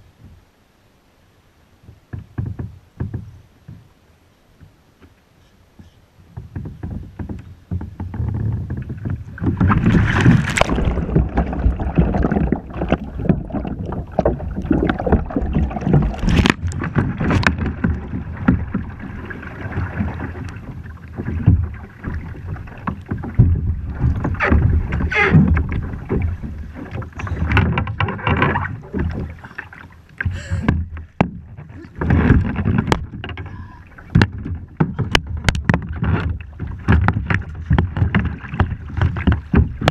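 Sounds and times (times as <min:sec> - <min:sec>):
water splashing and sloshing: 0:00.0 - 0:39.9
knocks against plastic hull: 0:01.8 - 0:03.9, 0:22.8 - 0:29.4, 0:30.2 - 0:39.9.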